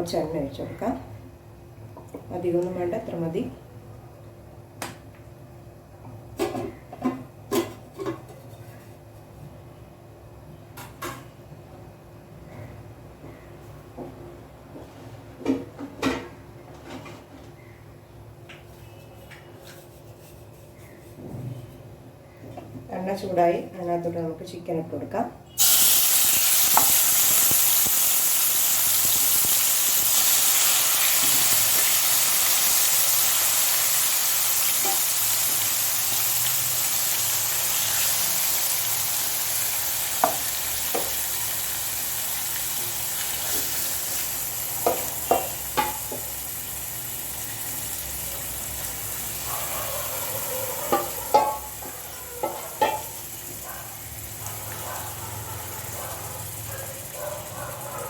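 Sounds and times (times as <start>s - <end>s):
chicken sizzling in hot oil: 25.5s - 58.0s.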